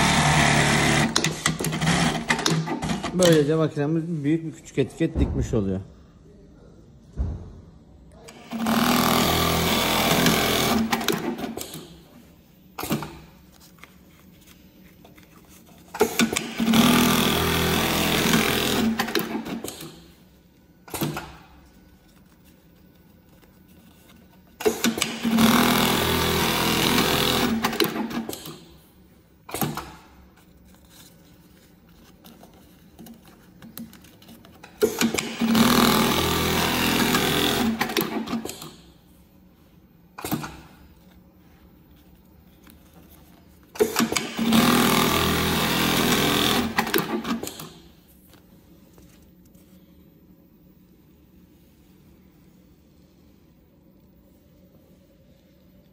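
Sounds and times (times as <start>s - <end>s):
sewing machine stitching: 0.0s - 3.4s, 8.3s - 12.0s, 15.9s - 20.0s, 24.6s - 28.6s, 34.8s - 38.8s, 43.8s - 47.8s.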